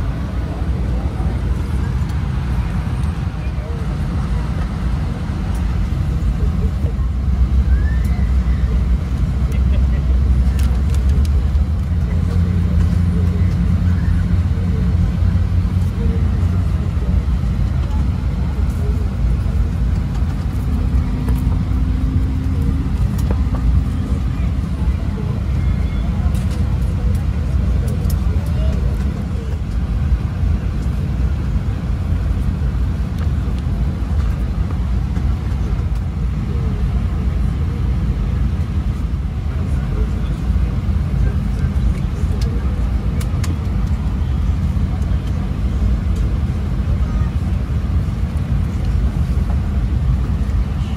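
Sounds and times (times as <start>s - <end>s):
faint voices: 0.0s - 50.9s
vehicle interior rumble: 0.0s - 50.9s.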